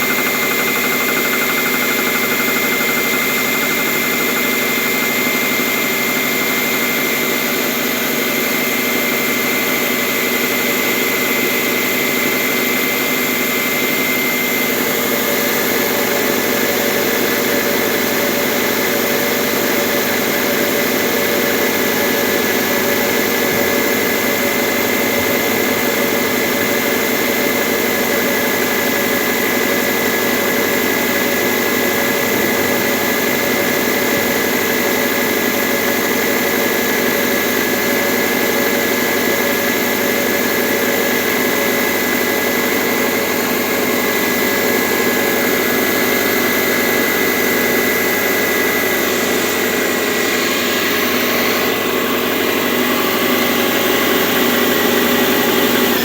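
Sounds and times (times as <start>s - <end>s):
car engine idling with knocking: 0.0s - 56.0s.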